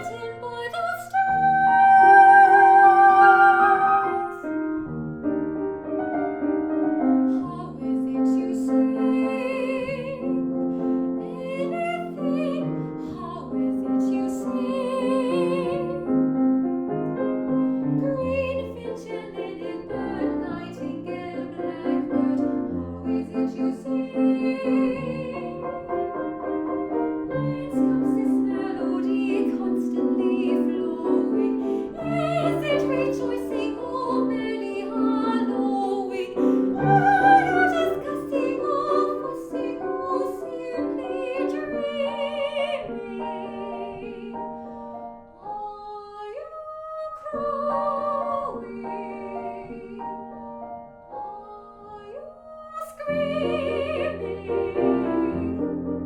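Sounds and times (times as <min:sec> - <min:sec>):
woman singing operatically: 0:00.0 - 0:04.4, 0:11.3 - 0:15.9, 0:27.4 - 0:44.2
piano accompaniment: 0:00.0 - 0:56.0.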